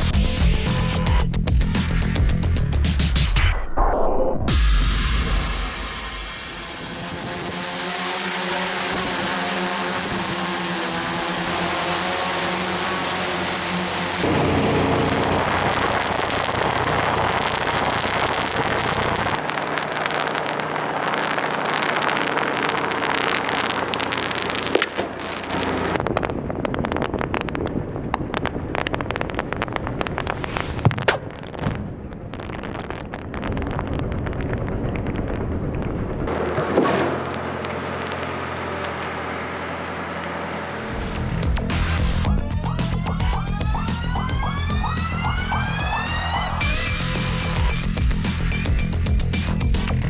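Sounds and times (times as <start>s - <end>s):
road roller engine running: 6.8s - 26.0s, 36.3s - 45.2s
bubble wrap popping: 15.2s - 26.1s.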